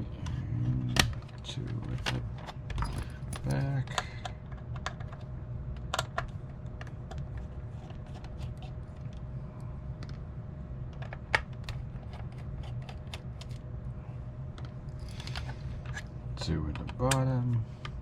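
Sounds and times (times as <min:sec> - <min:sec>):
steady low hum: 0:00.0 - 0:18.0.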